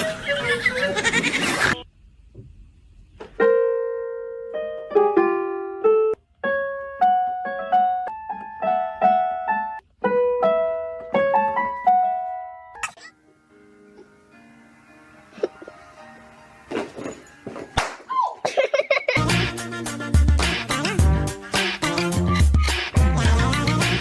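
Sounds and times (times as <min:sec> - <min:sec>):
piano melody: 0:03.4 - 0:17.7.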